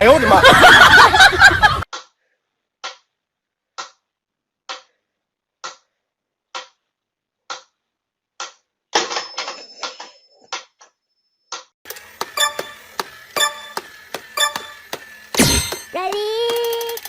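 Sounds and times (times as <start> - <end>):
thin high whine: 12.4 - 17.0.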